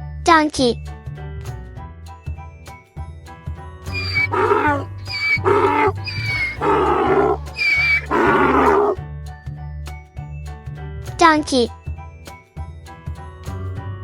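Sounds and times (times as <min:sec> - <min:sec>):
children's background music: 0:02.1 - 0:14.0
donkey braying: 0:03.9 - 0:09.0.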